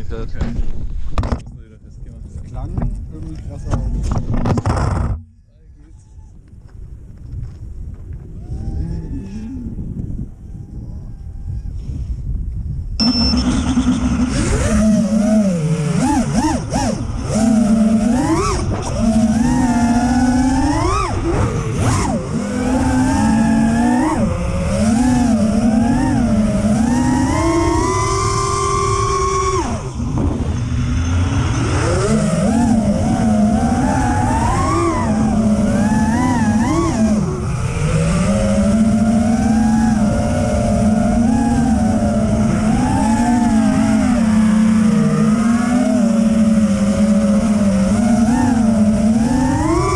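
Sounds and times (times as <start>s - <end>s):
low rumble: 0.0s - 48.0s
drone motors whining: 2.5s - 12.1s, 13.0s - 49.9s.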